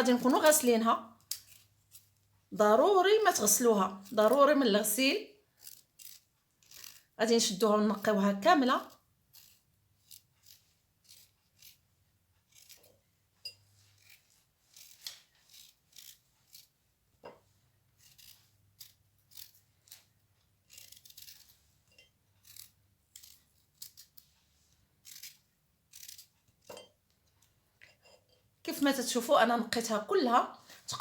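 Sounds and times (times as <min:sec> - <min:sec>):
blade scraping turnip skin: 0:01.3 - 0:02.2, 0:05.6 - 0:07.2, 0:08.8 - 0:12.9, 0:13.9 - 0:16.8, 0:18.0 - 0:21.6, 0:22.4 - 0:24.3, 0:25.0 - 0:26.6.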